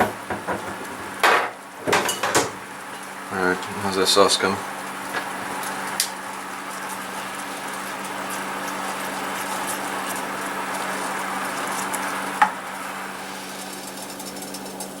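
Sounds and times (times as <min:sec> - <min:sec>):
sauce bubbling and sizzling in a pan: 0:02.6 - 0:03.3, 0:04.1 - 0:15.0.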